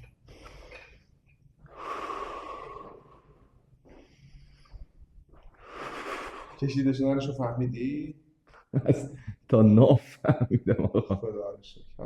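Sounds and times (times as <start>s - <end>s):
person breathing deeply: 0.2s - 6.8s.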